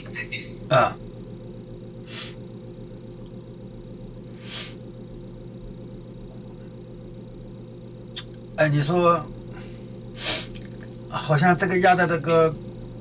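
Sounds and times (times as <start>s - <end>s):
steady low hum: 0.0s - 13.0s
short breaths: 2.1s - 2.4s, 4.4s - 4.8s, 9.5s - 10.5s.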